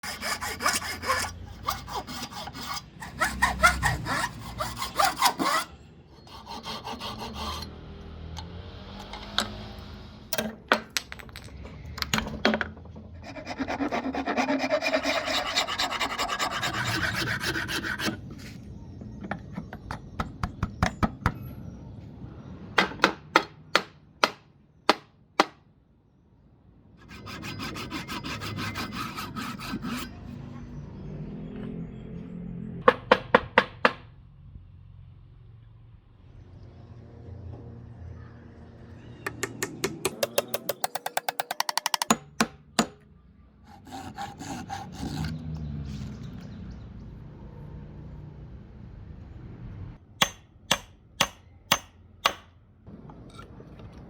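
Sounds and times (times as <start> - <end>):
steady scraping: 0.0 - 7.7, 13.0 - 18.6, 27.0 - 30.7
sawing or rasping wood: 0.0 - 7.8, 13.2 - 18.6, 27.0 - 30.5, 43.7 - 45.8.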